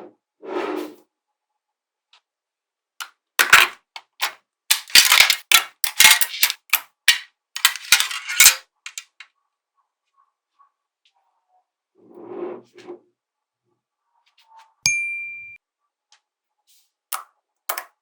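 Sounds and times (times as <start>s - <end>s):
magnetic balls clicking together: 3.4s - 9.2s, 17.1s - 18.0s.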